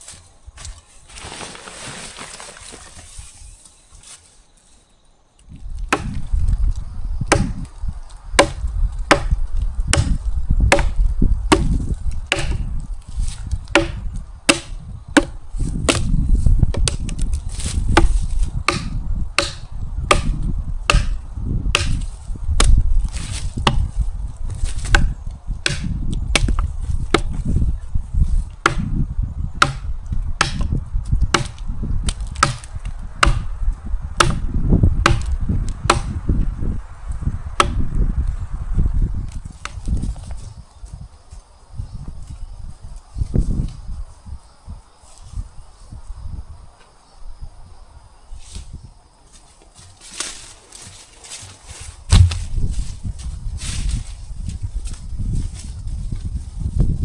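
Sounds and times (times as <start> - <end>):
chopping wood: 5.9 - 6.2, 7.3 - 7.7, 8.4 - 12.7, 13.7 - 16.1, 16.7 - 17.3, 17.9 - 22.8, 23.6 - 23.9, 24.8 - 27.4, 28.6 - 29.0, 29.6 - 33.5, 34.2 - 36.2, 37.6 - 37.8, 52.1 - 52.6.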